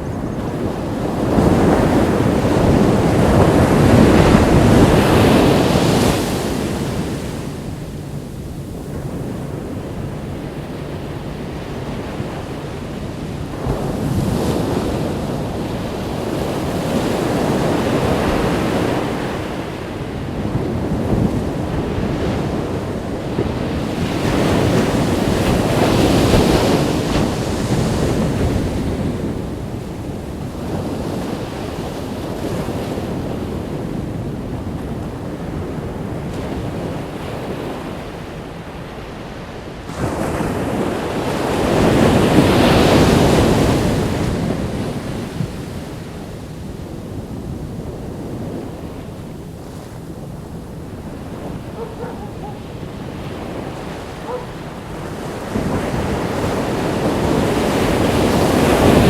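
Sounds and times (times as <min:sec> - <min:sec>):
ocean waves breaking on a beach: 0:00.0 - 0:59.0.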